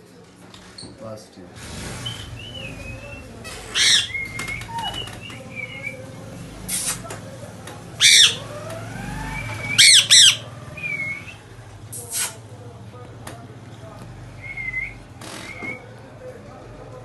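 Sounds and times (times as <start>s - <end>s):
parrot squawking: 2.0s - 7.0s, 8.0s - 11.4s
parrot whistling: 2.0s - 7.0s, 8.0s - 11.4s, 14.4s - 15.9s.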